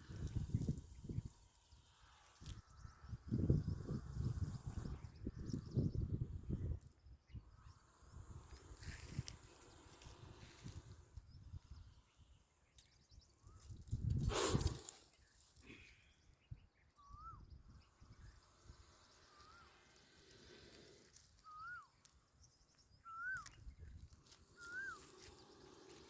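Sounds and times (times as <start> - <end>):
bird whistling call: 21.4 - 22.0, 23.0 - 23.7, 24.6 - 25.2.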